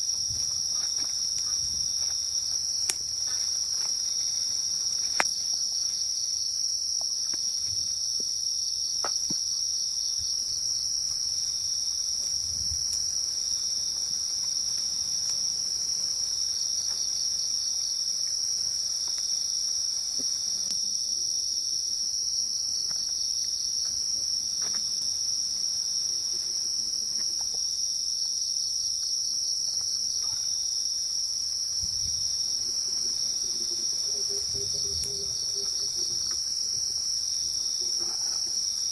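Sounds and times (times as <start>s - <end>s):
insects trilling: 0.0s - 38.9s.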